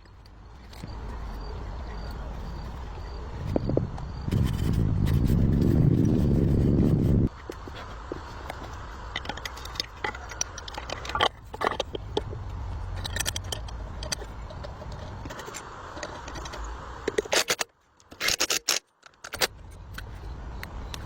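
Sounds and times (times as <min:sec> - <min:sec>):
scraping with clicks and clinks: 0:00.0 - 0:21.0
low rumble: 0:11.3 - 0:15.3.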